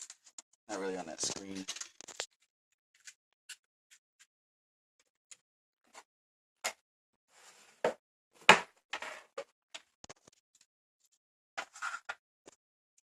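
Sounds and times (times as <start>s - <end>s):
objects clicking and knocking: 1.2s - 2.3s.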